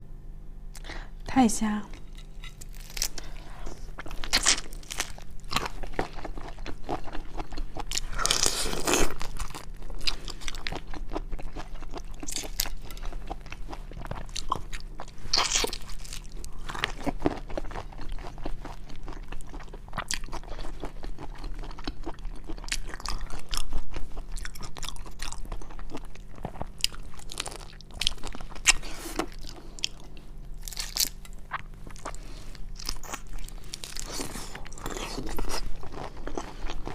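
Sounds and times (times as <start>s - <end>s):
crunchy bites: 30.6s - 32.2s.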